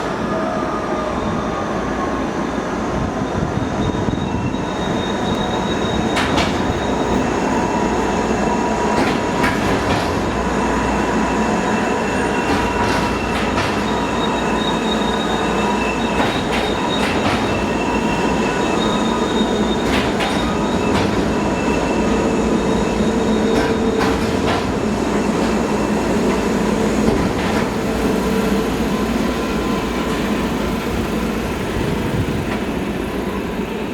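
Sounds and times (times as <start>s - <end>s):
tram rolling on track: 0.0s - 33.9s
wheels squealing: 10.4s - 24.1s.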